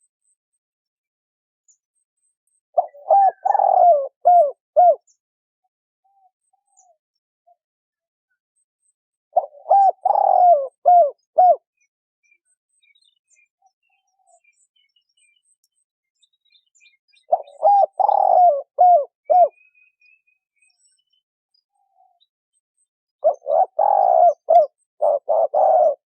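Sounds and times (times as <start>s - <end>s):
dove cooing: 2.8s - 5.0s, 9.4s - 11.6s, 17.3s - 19.6s, 23.2s - 26.0s.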